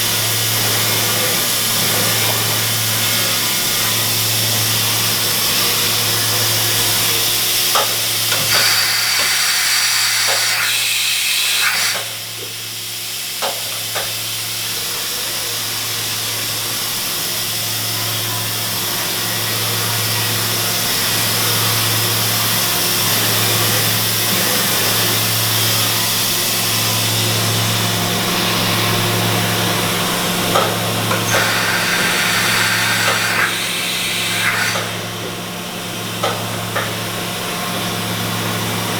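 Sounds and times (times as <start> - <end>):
machine hiss: 3.4 - 17.4, 23.9 - 38.6
machining center humming: 25.8 - 38.9.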